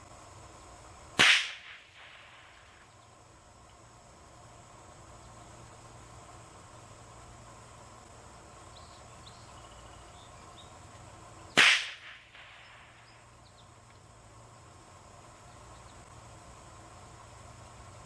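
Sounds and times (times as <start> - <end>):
crickets chirping: 0.0 - 18.0
rifle shot with echo: 1.2 - 2.7, 11.6 - 13.0.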